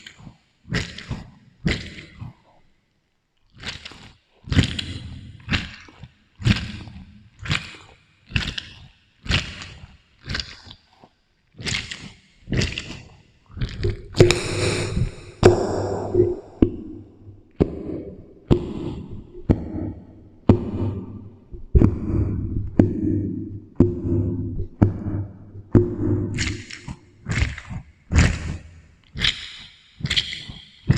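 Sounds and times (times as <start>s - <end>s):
squishy fruit sounds with echo: 0.0s - 30.9s
steady low drone: 14.2s - 27.1s.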